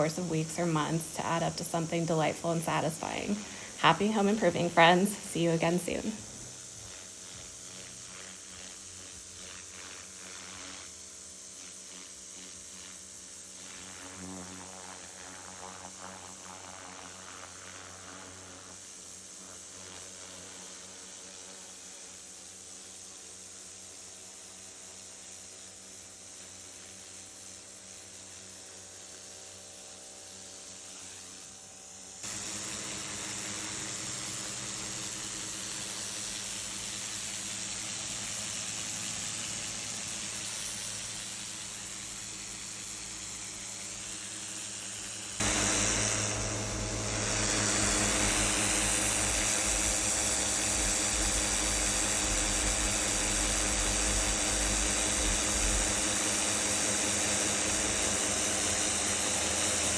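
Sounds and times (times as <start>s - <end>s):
pressure washer pump humming: 0.0s - 18.6s, 32.2s - 59.9s
water jet hissing on concrete: 0.0s - 21.5s, 32.2s - 59.9s.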